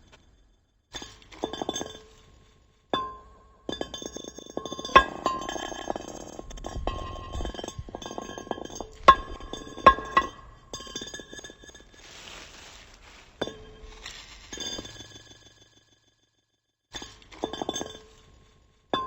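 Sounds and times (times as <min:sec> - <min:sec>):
glass clinking with ringing tone: 0:03.0 - 0:12.0, 0:13.4 - 0:15.9, 0:17.4 - 0:18.3.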